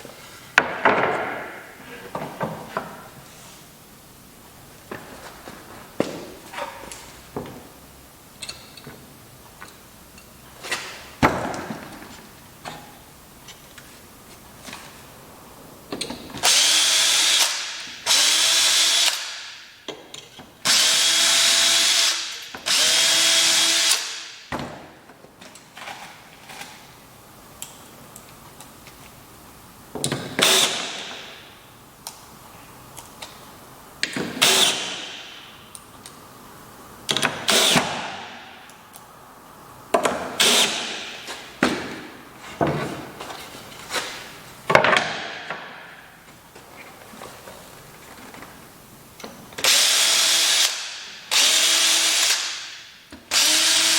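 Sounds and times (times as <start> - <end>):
power drill running: 16.4 - 19.2, 20.7 - 24.2, 49.6 - 52.5, 53.3 - 53.9.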